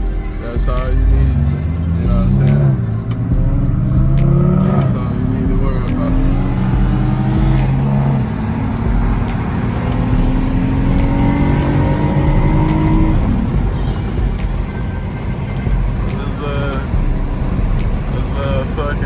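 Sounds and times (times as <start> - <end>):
car engine accelerating: 0.0 - 19.0.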